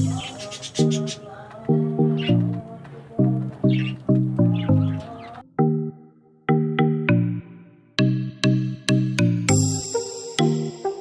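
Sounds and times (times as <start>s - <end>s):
plucked low-note melody: 1.7s - 9.8s.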